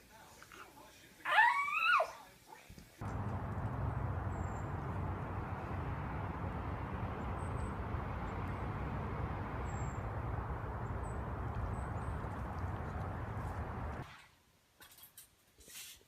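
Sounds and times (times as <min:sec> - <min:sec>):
low rumbling background noise: 0:03.0 - 0:14.0.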